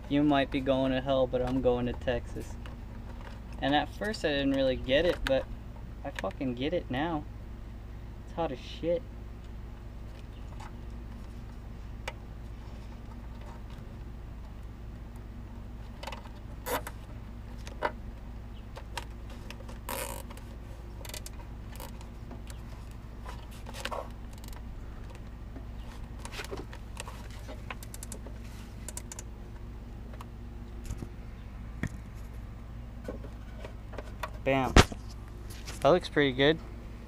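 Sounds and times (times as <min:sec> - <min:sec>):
steady low hum: 0:00.0 - 0:37.0
light clicks and rattles: 0:15.8 - 0:31.2.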